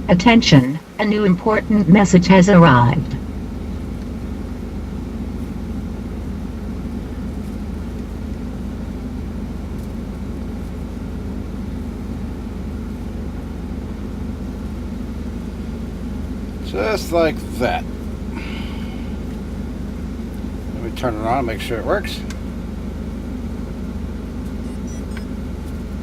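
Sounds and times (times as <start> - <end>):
truck idling drone: 0.0 - 26.0.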